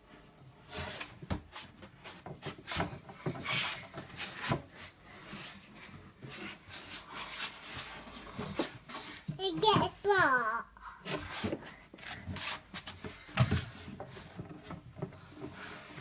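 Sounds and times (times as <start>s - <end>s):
scraping rustle: 11.1s - 16.0s.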